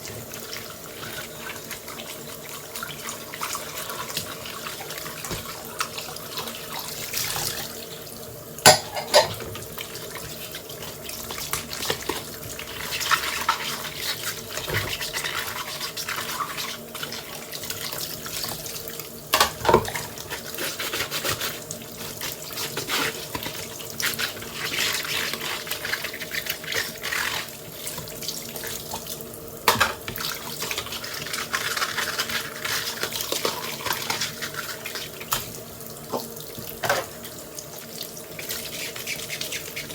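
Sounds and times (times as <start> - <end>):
tap water splashing in sink: 0.0 - 8.0, 8.6 - 39.9
dishes clattering together: 8.6 - 9.5, 19.3 - 20.1.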